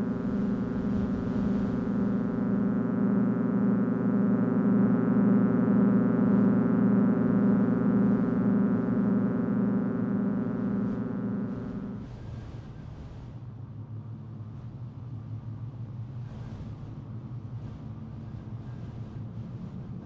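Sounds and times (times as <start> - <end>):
pulsing electronic drone: 0.0 - 12.3.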